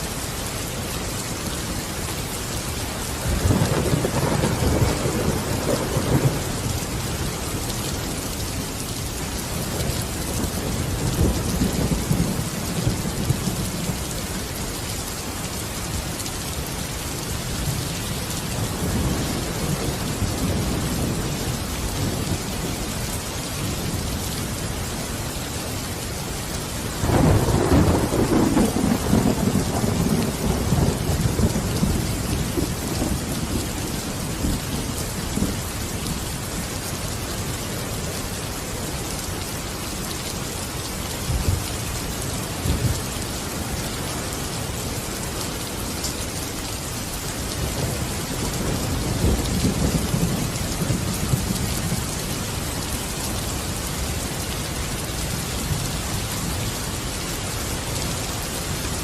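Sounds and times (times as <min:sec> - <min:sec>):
steady rain: 0:00.0 - 0:59.0
rolling thunder: 0:03.3 - 0:06.7, 0:26.9 - 0:34.7, 0:47.7 - 0:52.2.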